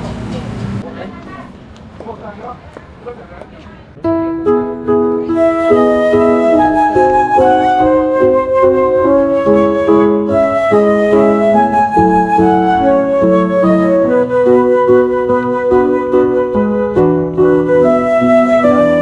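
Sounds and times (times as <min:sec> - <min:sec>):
flute melody over piano: 0:04.0 - 0:19.0.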